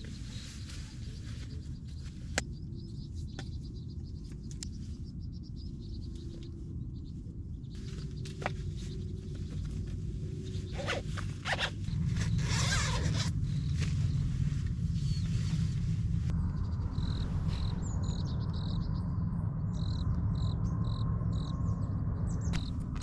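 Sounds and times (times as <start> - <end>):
zipper being pulled: 10.8 - 13.3.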